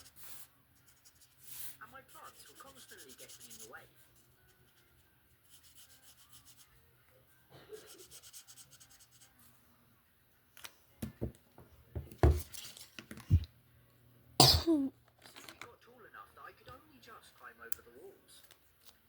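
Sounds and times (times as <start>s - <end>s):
cardboard bricks knocking: 11.0s - 12.5s.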